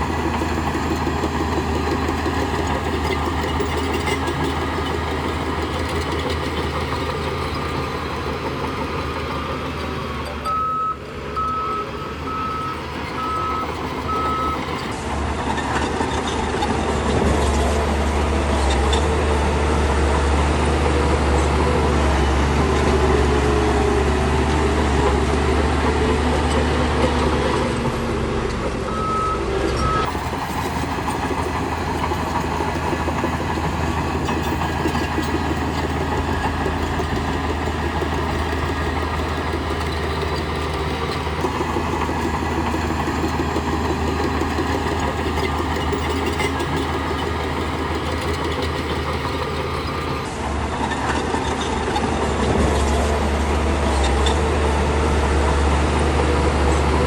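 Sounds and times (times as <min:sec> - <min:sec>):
diesel engine running: 0:00.0 - 0:57.0
reversing alarm beeping: 0:10.4 - 0:14.9, 0:28.9 - 0:30.1.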